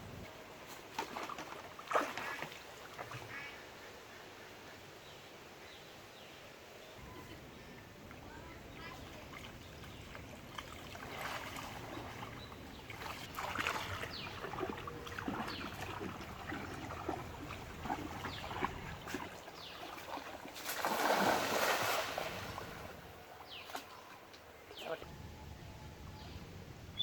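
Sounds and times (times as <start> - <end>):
pond water splashing: 0.6 - 3.6, 8.0 - 25.0.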